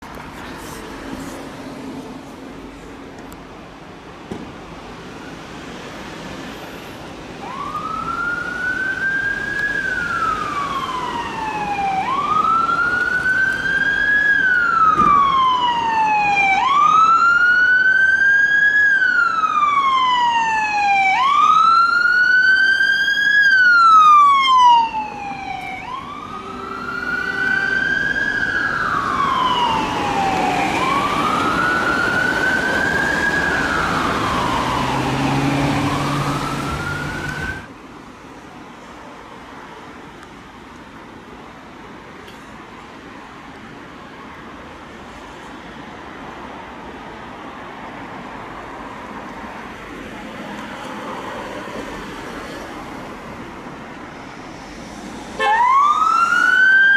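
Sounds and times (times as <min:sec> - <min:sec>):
police siren wailing: 0:07.4 - 0:37.7, 0:55.4 - 0:56.9.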